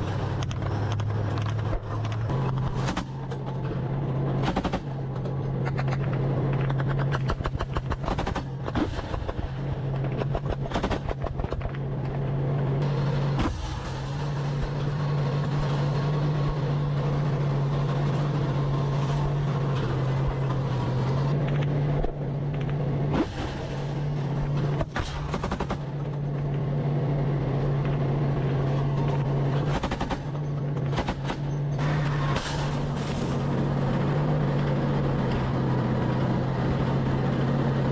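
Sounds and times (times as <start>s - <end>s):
diesel engine droning: 0.0s - 37.9s
sharp cracks and bangs: 0.4s - 12.0s, 22.5s - 26.5s, 28.8s - 34.8s.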